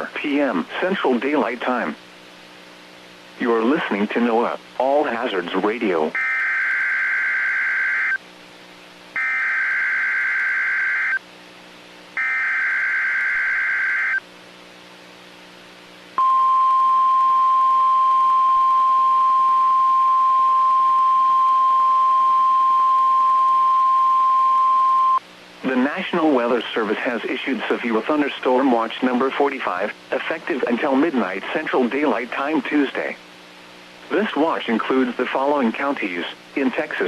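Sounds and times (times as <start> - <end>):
steady warning alarm tone: 6.2 - 8.2, 9.2 - 11.2, 12.2 - 14.2, 16.2 - 25.2.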